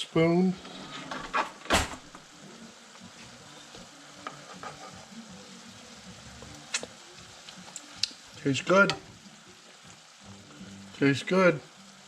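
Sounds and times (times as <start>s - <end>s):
food sizzling in a pan: 0.0s - 12.0s.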